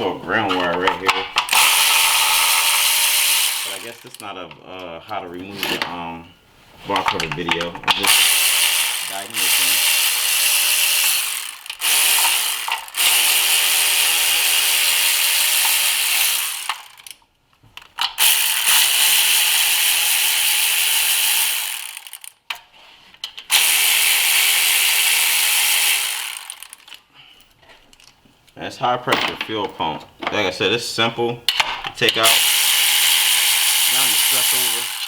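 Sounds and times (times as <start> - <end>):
electric ratchet running: 0.6 - 4.3, 7.9 - 17.2, 18.0 - 22.4, 23.4 - 27.0, 32.2 - 35.0.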